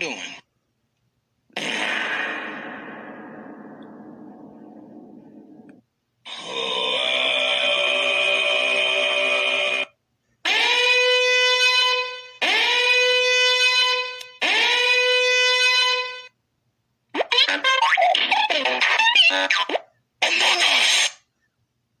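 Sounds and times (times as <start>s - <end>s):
high-pitched squeal: 1.6s - 6.5s.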